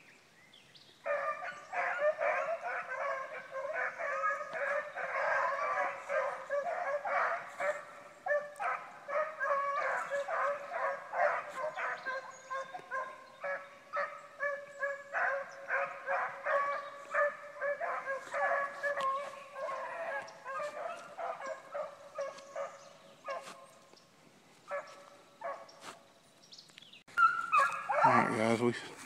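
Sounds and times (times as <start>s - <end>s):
hounds baying: 1.0s - 23.8s, 24.6s - 26.0s, 27.1s - 29.0s.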